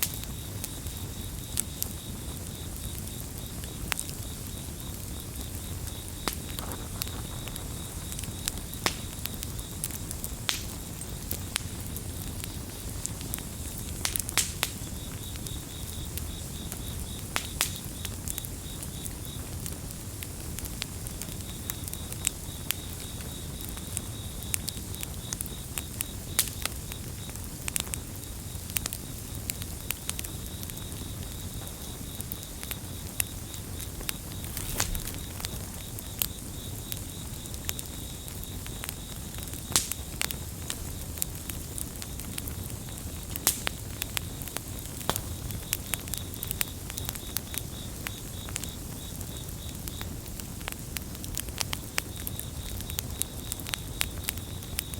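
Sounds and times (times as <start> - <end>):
campfire crackling: 0.0 - 54.9
cricket chirping: 0.0 - 54.9.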